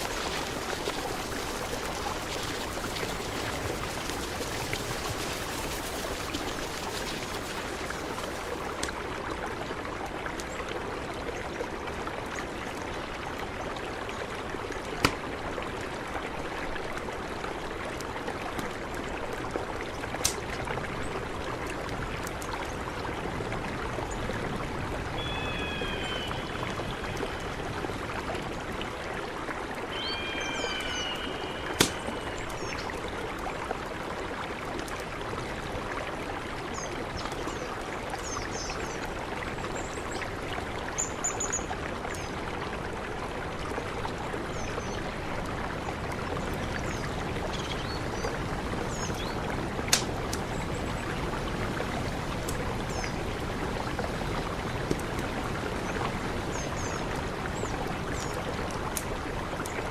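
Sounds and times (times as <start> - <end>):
river rushing: 0.0 - 10.0, 14.5 - 59.9
small birds chirping: 25.2 - 27.5, 29.9 - 32.9.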